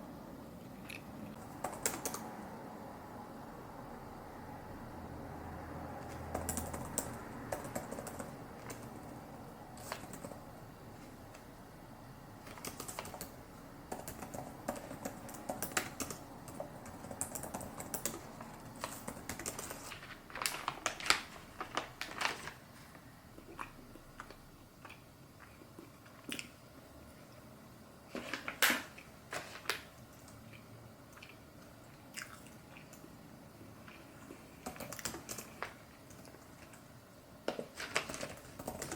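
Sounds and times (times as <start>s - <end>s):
computer keyboard typing: 1.4s - 2.3s, 6.0s - 9.2s, 9.8s - 10.4s, 12.4s - 20.0s, 34.6s - 36.2s, 37.9s - 38.9s.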